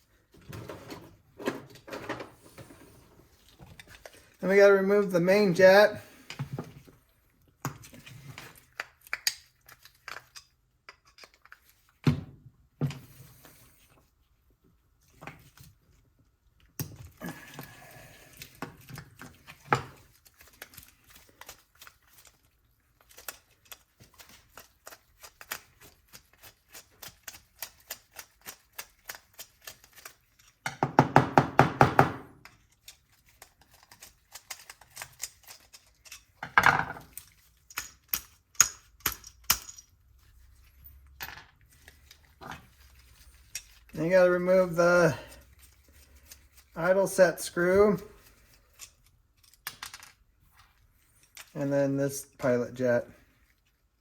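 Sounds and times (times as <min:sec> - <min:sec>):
screwdriver and metal parts clicking: 0:08.8 - 0:11.7, 0:32.4 - 0:40.0.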